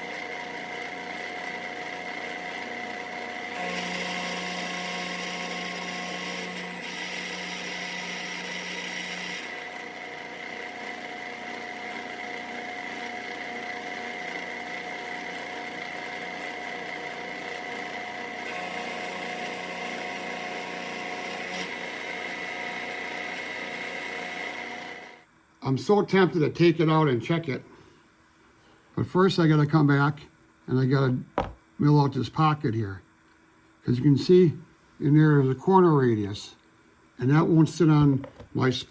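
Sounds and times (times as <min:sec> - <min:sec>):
router spindle whining: 0:00.0 - 0:25.2.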